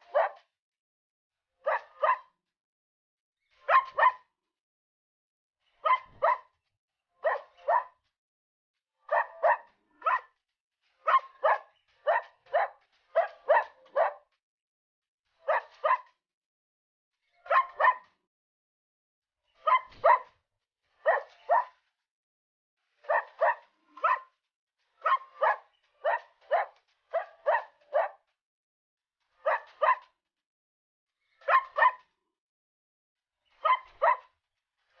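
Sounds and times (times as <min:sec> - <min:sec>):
dog barking: 0:00.0 - 0:00.5, 0:01.6 - 0:02.4, 0:03.6 - 0:04.3, 0:05.8 - 0:06.6, 0:07.2 - 0:08.0, 0:09.0 - 0:10.4, 0:11.0 - 0:14.3, 0:15.4 - 0:16.2, 0:17.4 - 0:18.2, 0:19.6 - 0:20.4, 0:21.0 - 0:21.8, 0:23.0 - 0:24.4, 0:25.0 - 0:28.3, 0:29.4 - 0:30.2, 0:31.4 - 0:32.1, 0:33.6 - 0:34.3.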